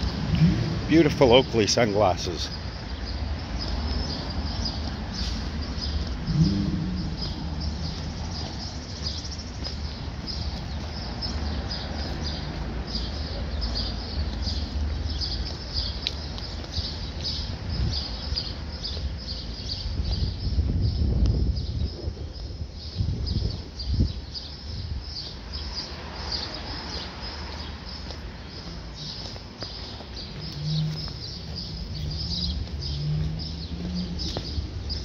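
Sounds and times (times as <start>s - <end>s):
small birds chirping: 0.0s - 35.0s
steady low rumble: 4.0s - 11.0s.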